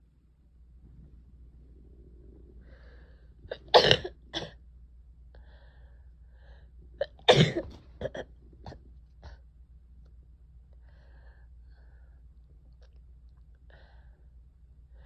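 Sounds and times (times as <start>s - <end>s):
person sneezing loudly: 3.5s - 4.5s, 7.2s - 8.2s
short coughs: 3.5s - 4.6s, 7.3s - 8.3s.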